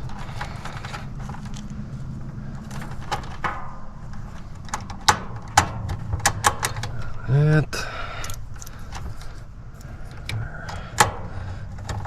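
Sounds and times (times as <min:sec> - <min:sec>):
steady low hum: 0:00.0 - 0:12.0
sharp clicks and metallic clinks: 0:02.6 - 0:12.0.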